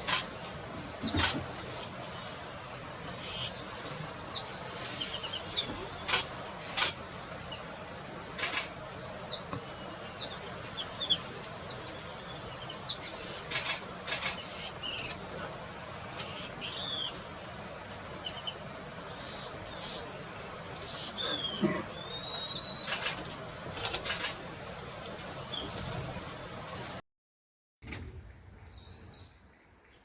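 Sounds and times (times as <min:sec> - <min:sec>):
steady hiss: 0:00.0 - 0:27.0
birds chirping and whistling: 0:21.0 - 0:24.0.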